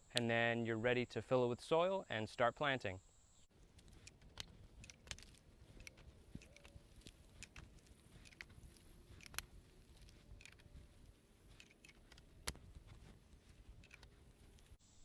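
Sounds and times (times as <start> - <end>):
faint clicks and ticks: 3.5 - 14.8.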